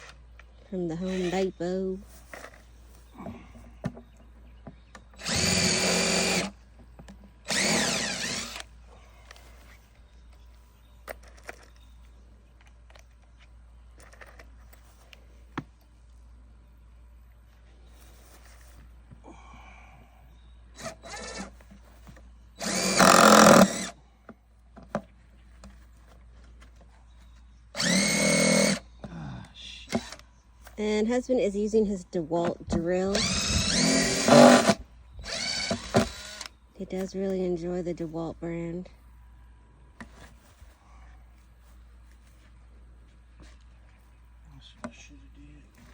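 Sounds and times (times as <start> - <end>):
power drill driving screws: 5.2 - 6.6, 7.4 - 8.7, 20.8 - 21.6, 22.6 - 24.0, 27.8 - 28.8, 29.9 - 30.2, 32.8 - 36.6.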